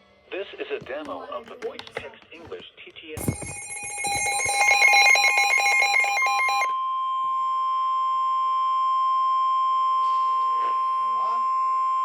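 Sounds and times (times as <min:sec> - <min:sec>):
chattering switching tones: 0:03.2 - 0:06.7
steady alarm tone: 0:03.2 - 0:07.1.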